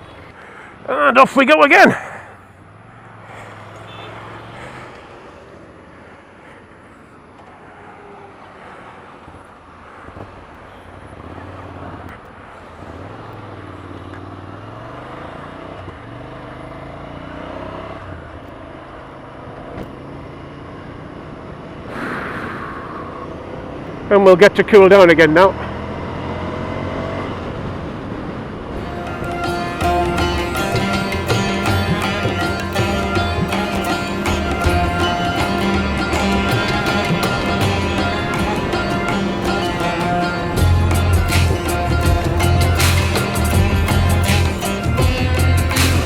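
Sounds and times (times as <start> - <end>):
wind and road noise: 0.0 - 46.0
motorcycle engine accelerating: 12.7 - 24.1, 25.5 - 46.0.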